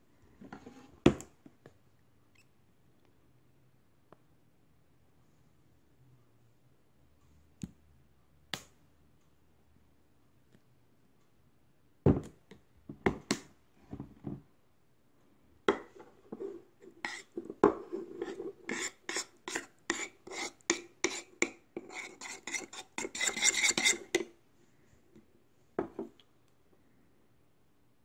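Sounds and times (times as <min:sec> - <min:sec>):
rapid scraping on a dish: 0:15.7 - 0:24.3.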